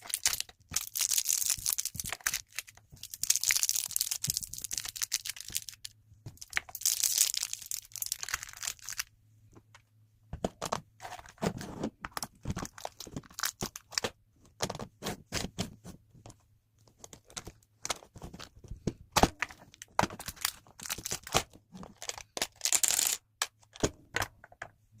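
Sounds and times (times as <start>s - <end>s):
plastic packaging crinkling: 0.0s - 9.1s, 19.6s - 23.2s.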